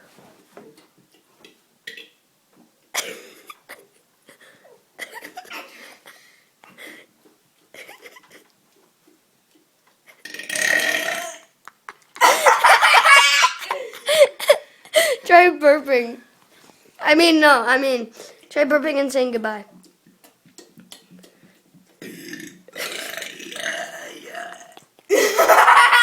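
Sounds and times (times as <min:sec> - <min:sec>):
child burping: 0:10.1 - 0:11.5, 0:22.0 - 0:24.8.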